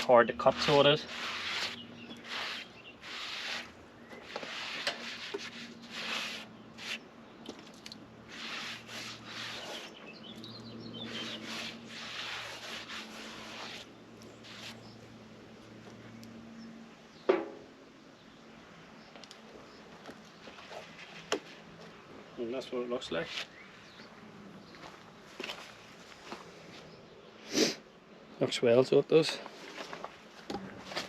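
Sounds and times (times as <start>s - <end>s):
bandsaw blade rasping through wood: 0.0s - 7.0s, 8.3s - 10.0s, 11.0s - 13.9s.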